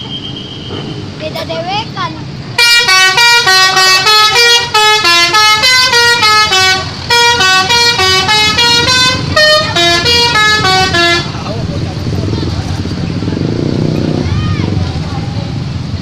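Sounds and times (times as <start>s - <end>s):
musical air horn playing a tune: 2.6s - 11.3s.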